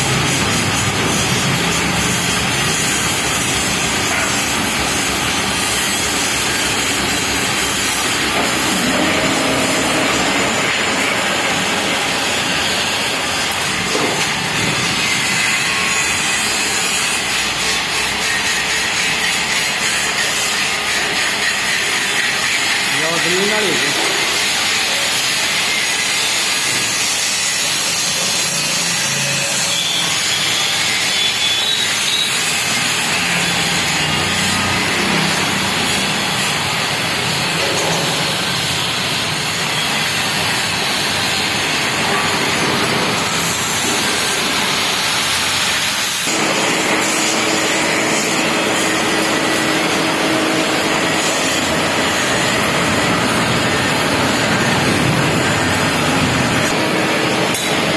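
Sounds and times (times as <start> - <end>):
band saw cutting wood: 0.0 - 57.9.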